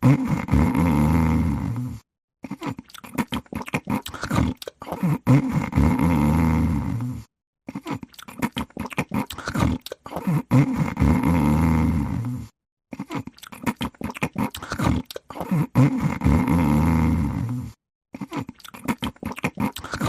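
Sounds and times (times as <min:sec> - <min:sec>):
cat snoring: 0:00.0 - 0:02.6, 0:04.2 - 0:07.3, 0:09.4 - 0:13.1, 0:14.4 - 0:17.8.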